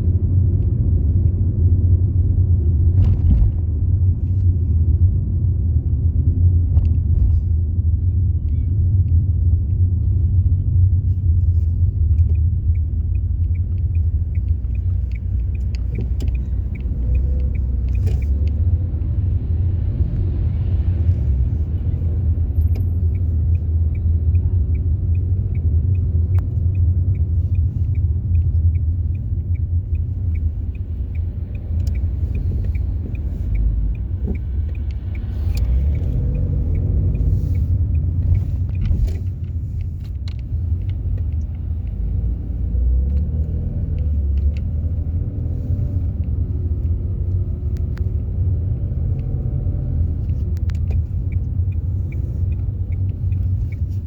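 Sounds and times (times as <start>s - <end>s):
car road and engine rumble: 0.0s - 54.0s
regular ticking: 11.9s - 20.3s, 21.2s - 54.0s.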